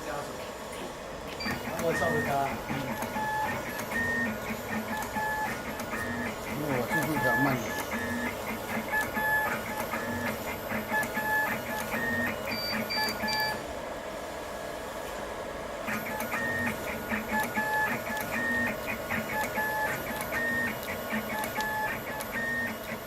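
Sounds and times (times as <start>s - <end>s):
steady machine hum: 0.0s - 23.0s
stepper motors whining: 1.2s - 13.6s.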